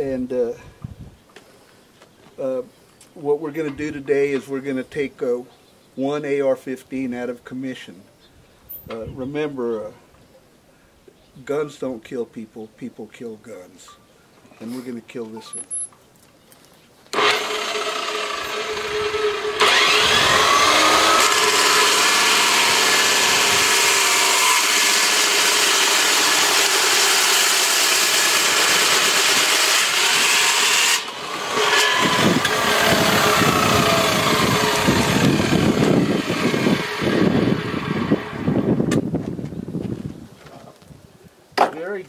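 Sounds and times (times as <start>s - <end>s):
power tool cutting metal: 17.1s - 38.6s.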